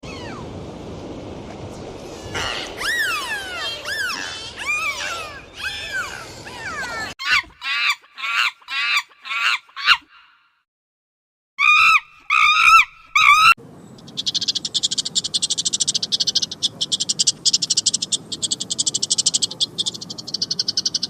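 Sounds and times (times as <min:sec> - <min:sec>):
short falling animal calls: 0:00.0 - 0:00.5, 0:02.2 - 0:10.0
animal calls rising and falling: 0:00.0 - 0:00.6, 0:02.1 - 0:10.1, 0:11.6 - 0:13.6.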